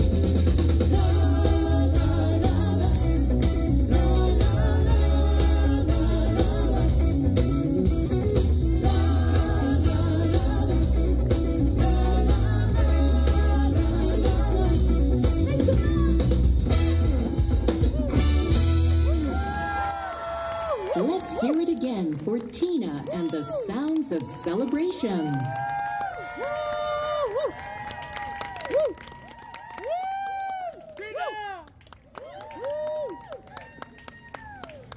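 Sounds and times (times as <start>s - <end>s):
drum kit: 0.0s - 19.5s
electric guitar: 0.0s - 19.9s
bass: 0.0s - 22.3s
person singing: 0.9s - 7.5s, 8.7s - 15.3s.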